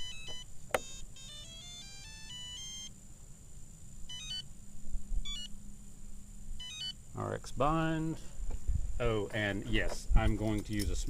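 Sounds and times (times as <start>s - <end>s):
electronic transmitter beeps: 0.0s - 2.9s, 4.1s - 4.5s, 5.2s - 5.6s, 6.6s - 7.0s.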